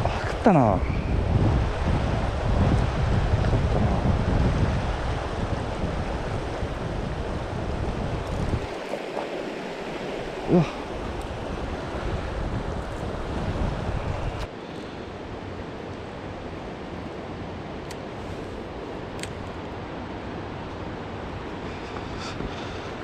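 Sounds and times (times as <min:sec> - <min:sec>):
wind buffeting microphone: 0:00.0 - 0:14.5
flowing water rushing: 0:00.0 - 0:23.0.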